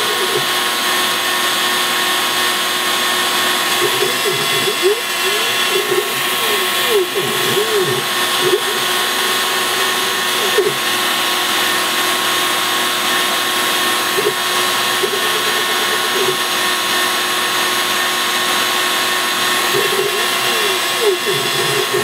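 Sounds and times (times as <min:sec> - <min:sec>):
cnc machine motor whine: 0:00.0 - 0:22.0
cutting into board: 0:03.6 - 0:11.0.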